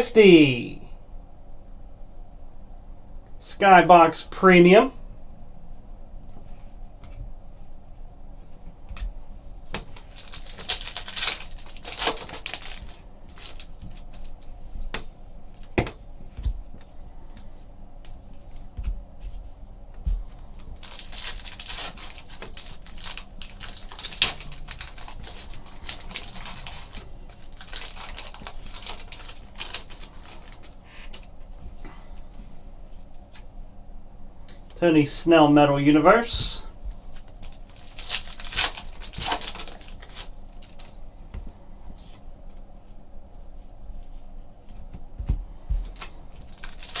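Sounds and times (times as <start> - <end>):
wrappers rustling and crinkling: 8.3 - 33.6, 35.9 - 47.0.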